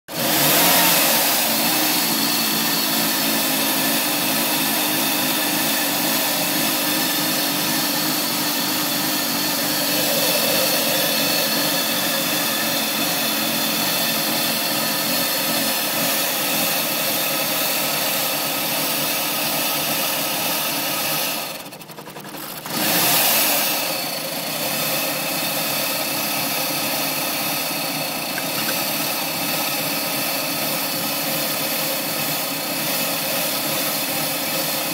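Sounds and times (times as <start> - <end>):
car engine idling roughly: 1.5 - 23.1.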